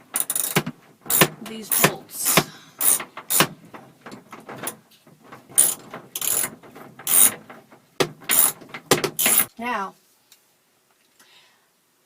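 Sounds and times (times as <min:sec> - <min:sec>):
socket ratchet clicking: 0:00.1 - 0:01.9, 0:05.6 - 0:06.5, 0:07.1 - 0:07.3, 0:08.3 - 0:08.6, 0:09.2 - 0:09.5.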